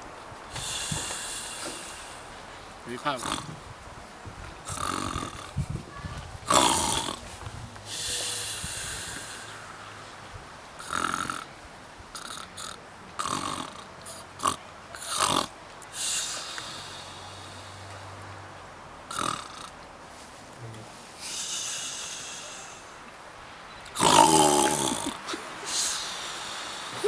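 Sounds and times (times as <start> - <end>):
short sharp snorts: 0.5 - 2.4, 3.0 - 3.6, 4.7 - 10.0, 10.8 - 11.5, 12.2 - 18.1, 19.1 - 19.8, 21.2 - 23.0, 24.0 - 27.0
person snoring: 3.1 - 3.5, 4.7 - 5.6, 6.5 - 7.2, 10.8 - 11.5, 19.1 - 19.7, 24.0 - 27.0.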